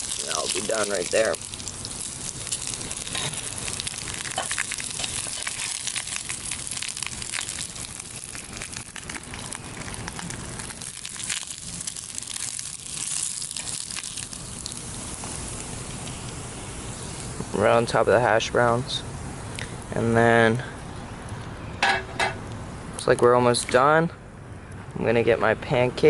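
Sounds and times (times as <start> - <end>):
bacon sizzling in a pan: 0.0 - 17.4.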